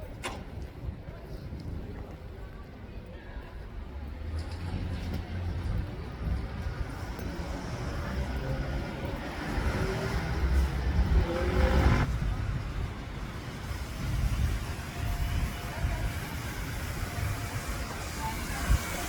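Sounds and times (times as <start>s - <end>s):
vehicle passing close: 6.9s - 12.2s.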